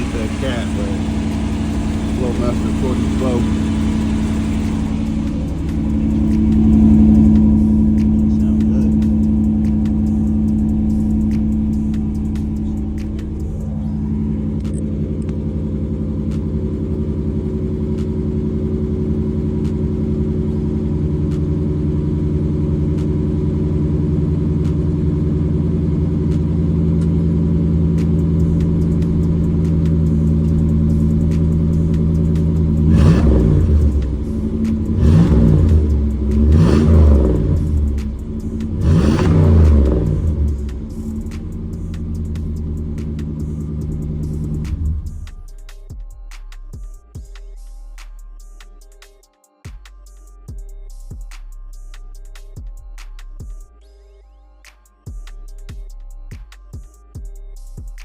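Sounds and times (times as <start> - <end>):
car engine revving: 0.0 - 45.9
car engine idling: 0.0 - 47.3.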